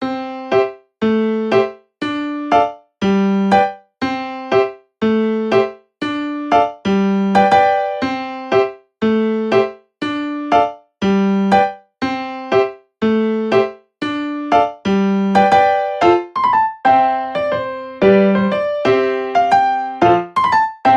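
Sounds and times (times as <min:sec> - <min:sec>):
electric piano melody: 0:00.0 - 0:20.9.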